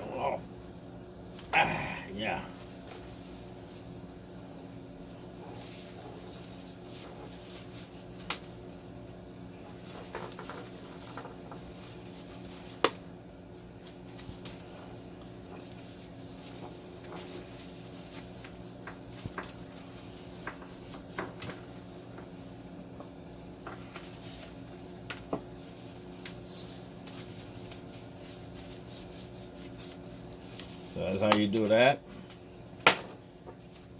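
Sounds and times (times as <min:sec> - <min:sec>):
steady low hum: 0:00.0 - 0:33.9.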